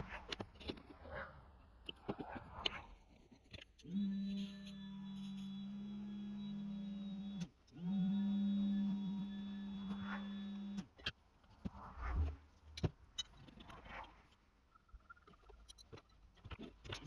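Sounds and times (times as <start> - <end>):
small electric motor humming: 3.8 - 10.9.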